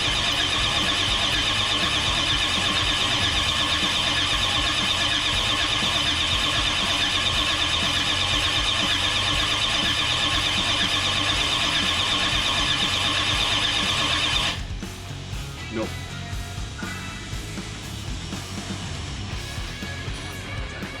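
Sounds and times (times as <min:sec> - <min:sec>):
starter motor cranking engine: 0:00.0 - 0:14.6.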